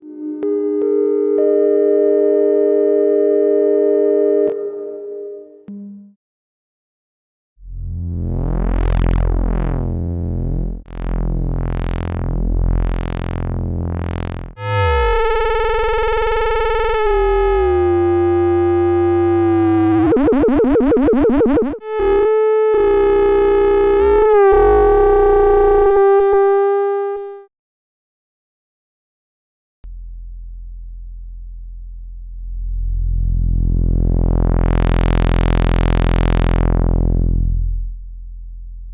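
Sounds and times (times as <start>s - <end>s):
buzzy synthesizer tone: 0.0s - 5.7s, 7.8s - 27.4s, 32.8s - 38.9s
resonant singing synth tone: 0.0s - 6.1s, 14.6s - 25.6s.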